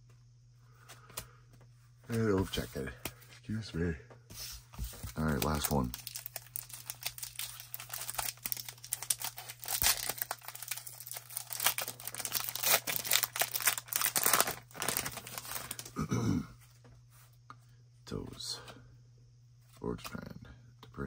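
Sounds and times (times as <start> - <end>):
steady low hum: 0.0 - 21.0
wrapper tearing and crinkling: 5.1 - 15.9.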